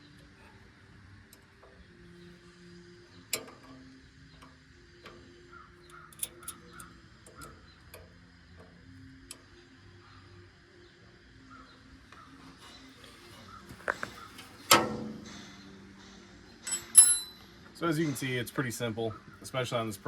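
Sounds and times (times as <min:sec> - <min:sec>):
wrench clicking on metal nuts: 0:03.3 - 0:09.4, 0:16.6 - 0:17.4.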